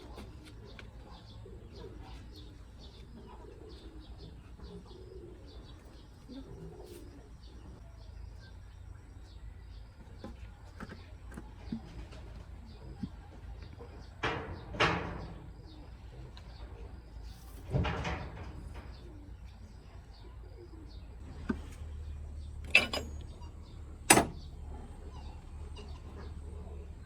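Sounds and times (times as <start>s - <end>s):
bird cooing: 0.1s - 7.8s, 18.9s - 21.1s.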